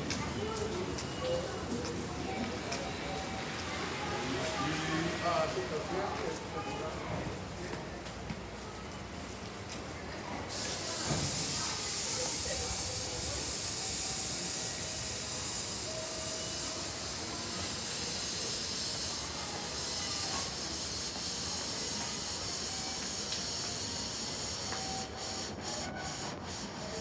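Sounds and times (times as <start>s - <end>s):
steady hiss: 10.5s - 26.8s.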